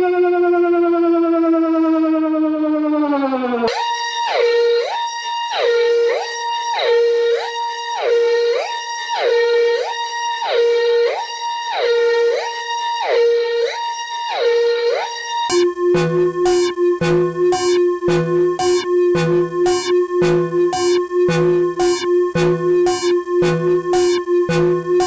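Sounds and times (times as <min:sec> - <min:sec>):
hi-lo emergency siren: 0:00.0 - 0:25.0
electronic alert tone: 0:15.0 - 0:25.0.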